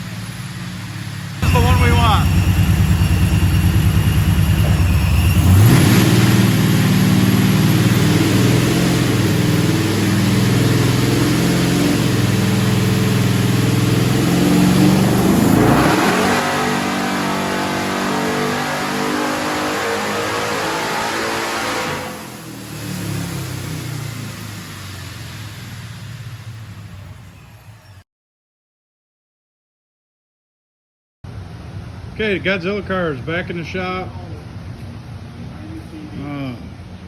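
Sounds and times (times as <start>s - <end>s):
supercharged engine revving: 1.2s - 26.7s.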